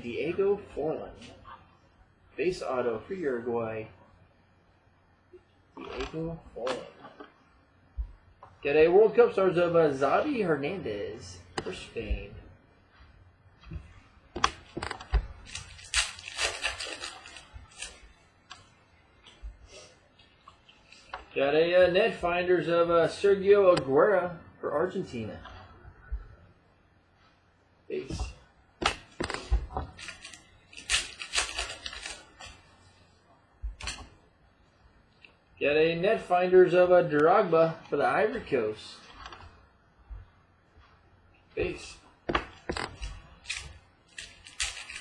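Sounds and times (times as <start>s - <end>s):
foil wrapper crinkling: 14.8s - 18.1s, 28.9s - 32.6s, 42.8s - 45.0s.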